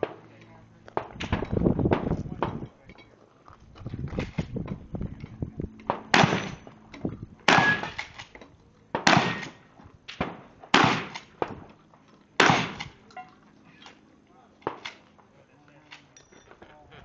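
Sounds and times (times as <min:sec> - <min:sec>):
gunshots with echo: 0:06.0 - 0:06.6, 0:07.5 - 0:08.0, 0:09.0 - 0:09.6, 0:10.2 - 0:11.2, 0:12.4 - 0:12.9.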